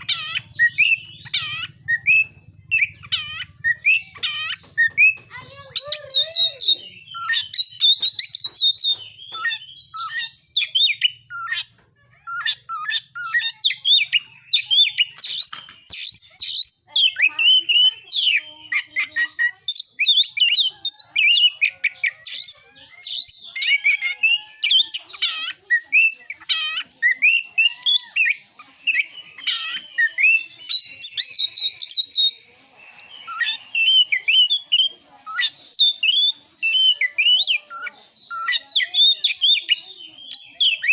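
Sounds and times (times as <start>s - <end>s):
bird singing chirps and trills: 0.0s - 40.9s.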